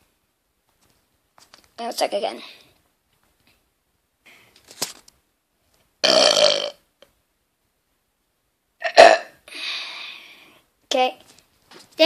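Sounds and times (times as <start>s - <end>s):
person burping: 6.0s - 6.8s, 8.8s - 9.4s.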